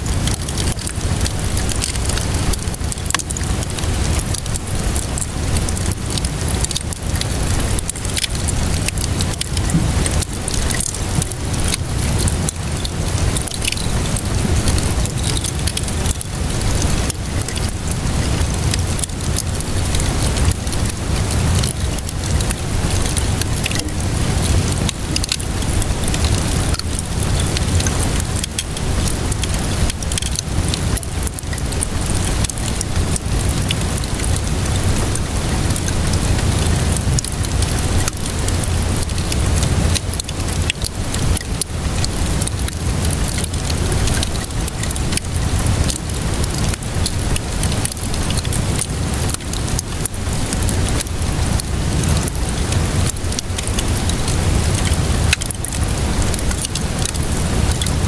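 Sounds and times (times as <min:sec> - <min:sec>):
rainfall: 0:00.0 - 0:58.0
wood fire crackling and popping: 0:00.0 - 0:58.0
low rumble: 0:20.9 - 0:27.3.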